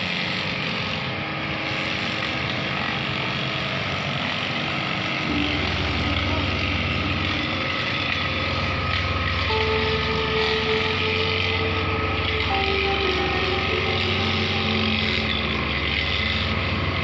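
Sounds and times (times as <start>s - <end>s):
road traffic noise: 0.0s - 17.0s
vehicle engine idling: 5.0s - 17.0s.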